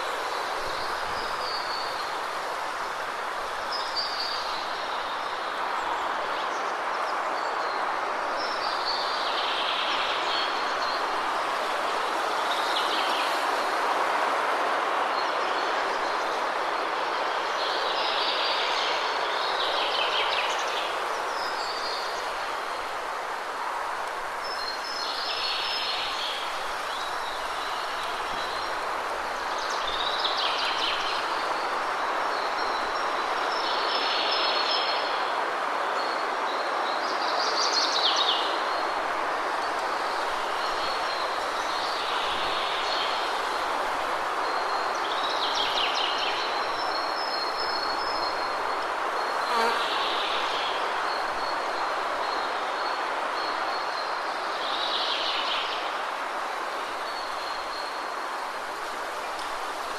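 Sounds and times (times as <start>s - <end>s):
waterfall rushing: 38.3s - 59.9s.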